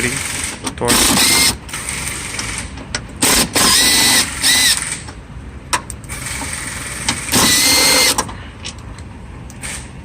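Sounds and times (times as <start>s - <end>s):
power drill whirring: 1.0s - 2.3s, 3.2s - 5.0s, 6.1s - 8.2s.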